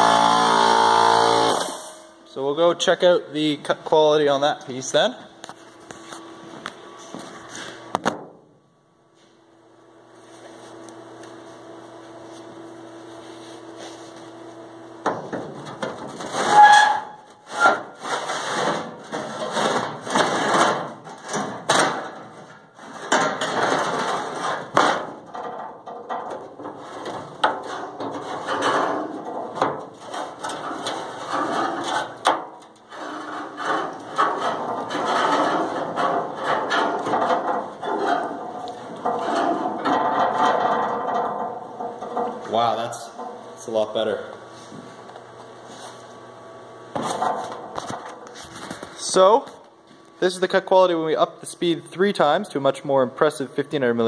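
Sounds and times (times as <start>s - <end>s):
metal scraping and knocking: 15.1s - 43.8s
low machine hum: 23.4s - 54.0s.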